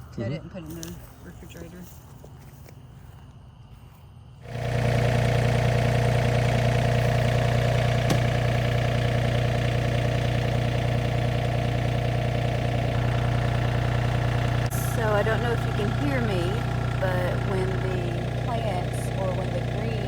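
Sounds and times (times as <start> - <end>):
tractor engine running: 4.4 - 20.0.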